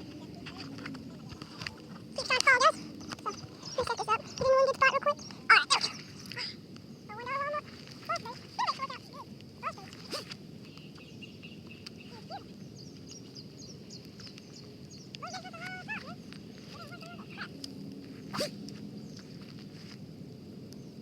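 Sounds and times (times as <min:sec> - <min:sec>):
steady high hiss: 0:00.0 - 0:21.0
quick high chirps: 0:18.3 - 0:18.6.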